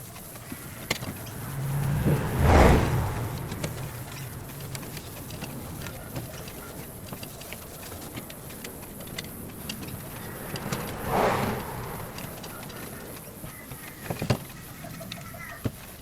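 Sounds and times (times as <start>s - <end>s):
rustle: 0.0s - 16.0s.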